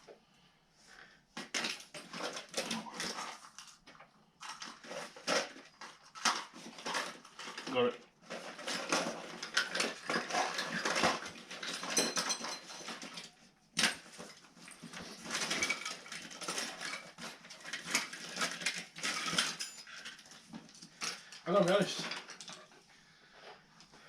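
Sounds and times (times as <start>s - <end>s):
small metal tools clinking: 4.4s - 22.8s.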